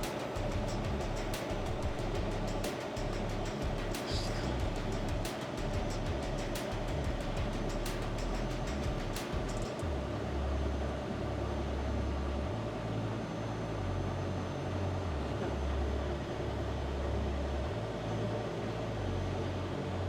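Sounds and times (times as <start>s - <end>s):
diesel engine idling rumble: 0.0s - 10.8s.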